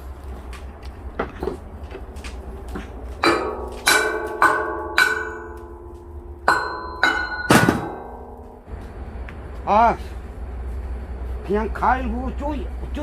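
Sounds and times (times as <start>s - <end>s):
hammer striking steel: 3.2s - 8.7s.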